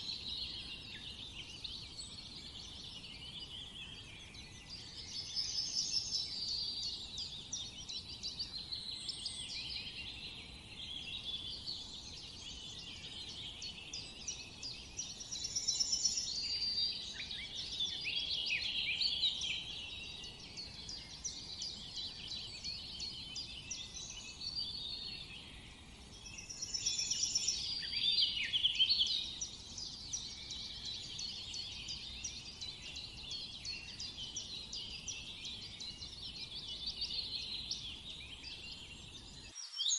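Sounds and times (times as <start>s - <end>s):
birds chirping and trilling: 0.0s - 39.9s.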